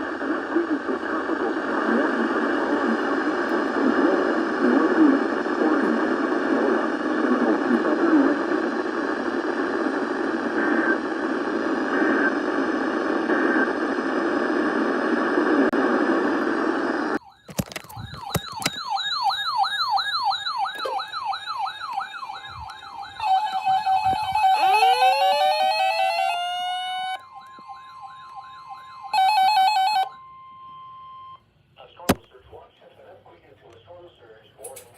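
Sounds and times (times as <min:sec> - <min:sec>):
muffled hissy radio audio: 0:00.0 - 0:17.2, 0:22.5 - 0:26.6, 0:31.8 - 0:34.9
electronic siren warbling: 0:17.2 - 0:31.4.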